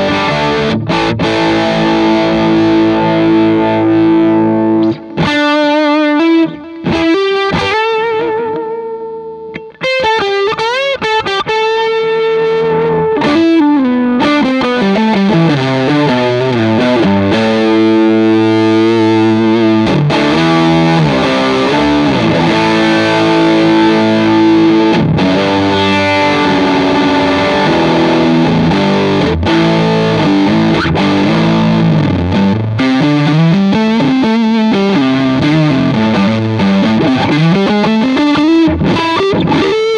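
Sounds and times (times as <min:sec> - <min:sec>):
distorted guitar chords strummed: 0:00.0 - 0:39.9
overdriven electric guitar lines: 0:00.0 - 0:39.9.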